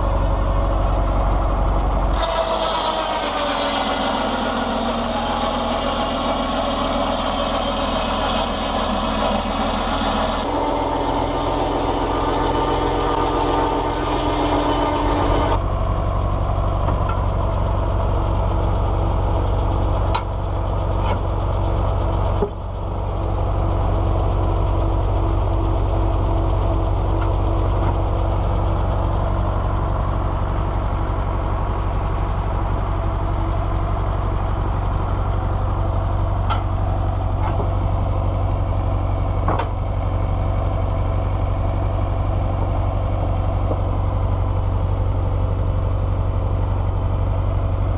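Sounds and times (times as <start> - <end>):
tractor engine running: 0.0 - 47.9
circular saw blade hiss cutting log: 2.1 - 15.6.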